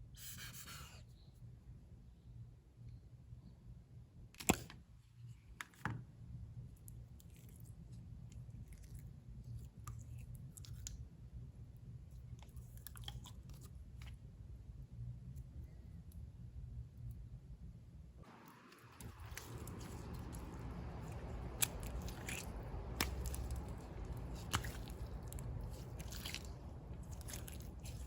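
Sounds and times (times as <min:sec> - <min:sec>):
steady low hum: 0:06.1 - 0:28.0
soft crackles and taps: 0:18.8 - 0:28.0.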